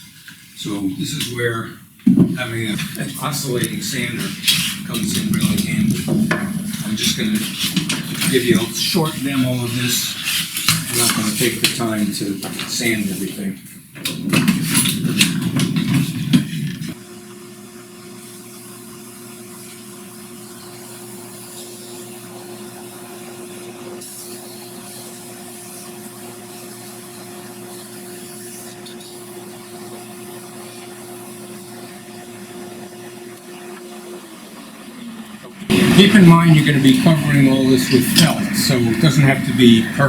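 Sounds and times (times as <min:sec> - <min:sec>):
sander motor humming: 0:02.4 - 0:11.5, 0:35.7 - 0:40.0
spindle sander sanding: 0:02.6 - 0:12.0, 0:18.2 - 0:33.6, 0:35.7 - 0:40.0.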